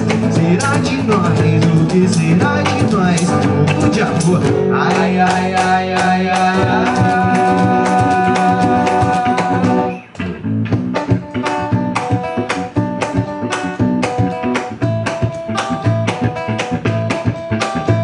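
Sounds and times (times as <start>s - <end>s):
band playing instrumental: 0.0s - 18.0s
strummed acoustic guitar: 0.0s - 18.0s.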